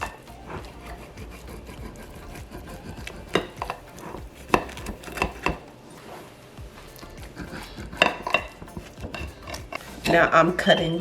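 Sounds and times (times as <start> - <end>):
utensil scraping: 0.0 - 11.0
utensil clicking on baking dish: 3.3 - 5.6.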